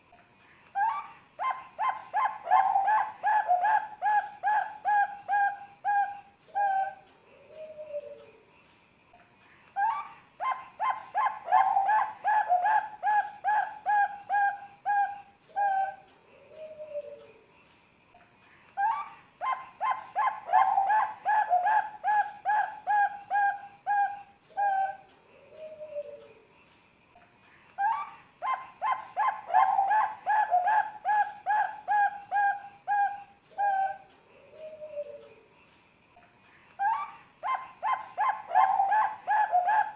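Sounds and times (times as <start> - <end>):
soft low falling coo: 0.7 - 8.4, 9.8 - 17.5, 18.8 - 26.5, 27.8 - 35.5
dove cooing: 0.8 - 8.3, 9.8 - 17.4, 18.8 - 26.4, 27.8 - 35.4, 36.8 - 39.9.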